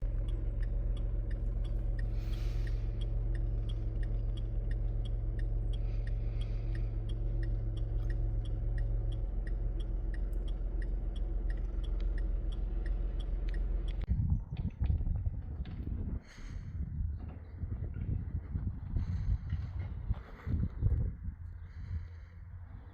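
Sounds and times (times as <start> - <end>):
car engine running: 0.0 - 14.1
turn signal ticking: 0.0 - 14.1.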